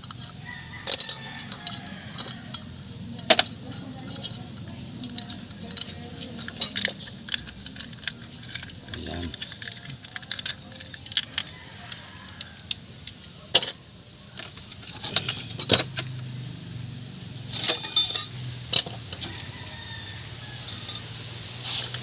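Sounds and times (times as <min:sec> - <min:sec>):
metal tools clinking: 0:00.0 - 0:11.4, 0:14.7 - 0:16.0, 0:17.5 - 0:19.0, 0:20.6 - 0:21.1
ringing metallic clatter: 0:00.1 - 0:02.6, 0:17.5 - 0:19.0, 0:20.6 - 0:21.1.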